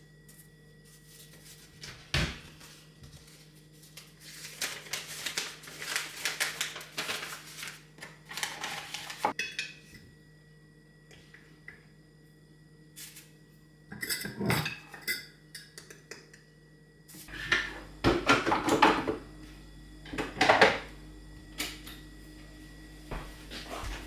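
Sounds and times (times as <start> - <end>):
dishes and cutlery clattering: 9.2 - 10.0, 13.9 - 16.0
steady low hum: 9.7 - 24.0.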